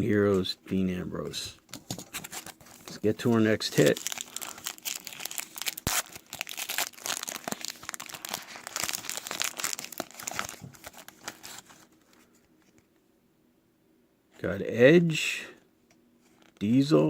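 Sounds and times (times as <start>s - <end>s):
foil wrapper tearing and crinkling: 2.2s - 11.9s.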